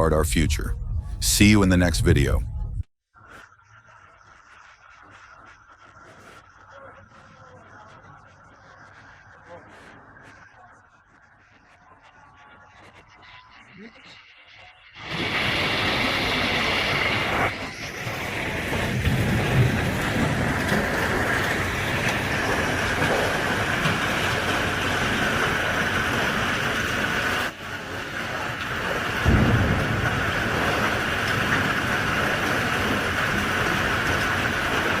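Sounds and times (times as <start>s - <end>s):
thunder rumbling: 0.0s - 2.9s, 15.1s - 35.0s
heavy rain: 15.0s - 35.0s.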